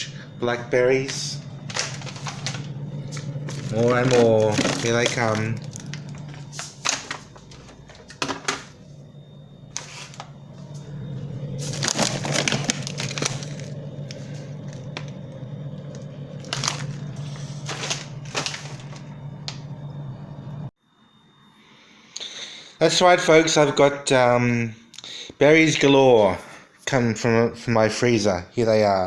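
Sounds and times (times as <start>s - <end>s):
steady low hum: 0.0s - 25.0s
plastic bags crinkling: 1.0s - 8.9s, 9.6s - 19.8s.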